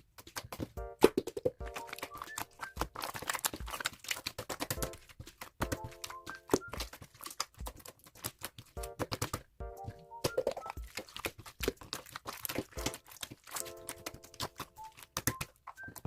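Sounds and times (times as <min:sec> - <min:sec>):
low thumping beat: 0:09.6 - 0:10.2.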